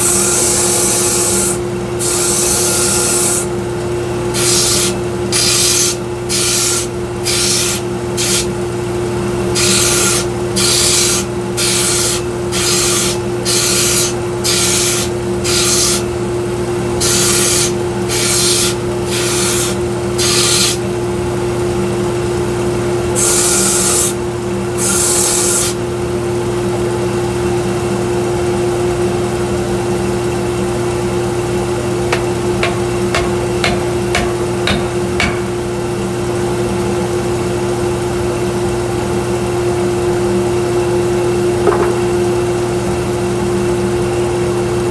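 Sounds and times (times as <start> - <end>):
wood sanding against belt: 9.6 - 16.0, 32.2 - 35.5
belt sander running: 32.1 - 35.8.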